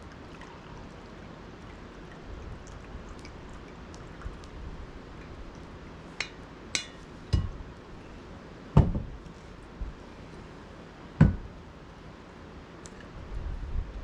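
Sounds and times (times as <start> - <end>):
tableware knocking on a table: 8.8 - 9.1.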